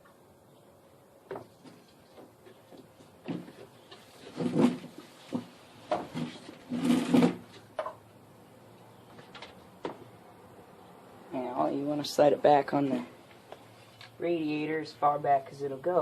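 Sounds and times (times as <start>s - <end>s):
knocks and scrapes fitting a hose: 1.3s - 8.0s.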